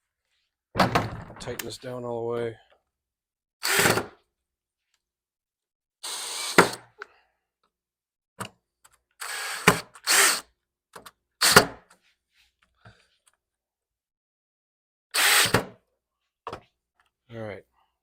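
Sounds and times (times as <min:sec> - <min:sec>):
cordless drill driving screws: 0:03.6 - 0:04.1, 0:06.0 - 0:06.9, 0:09.2 - 0:10.5, 0:15.1 - 0:15.6.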